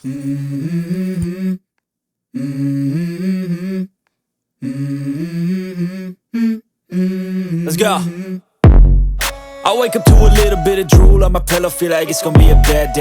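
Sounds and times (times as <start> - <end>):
person humming a melody: 0.0 - 1.6, 4.6 - 8.4, 9.7 - 13.0.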